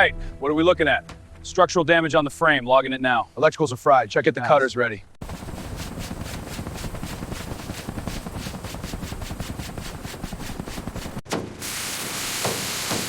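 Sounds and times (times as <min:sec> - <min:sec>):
hiss: 0:05.4 - 0:13.0.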